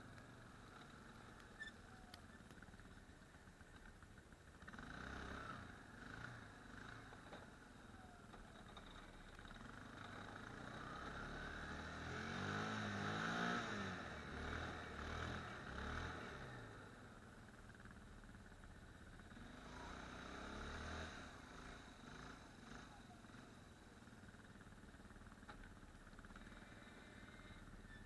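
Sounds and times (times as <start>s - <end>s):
atv engine revving under load: 9.9s - 16.7s, 19.3s - 23.0s.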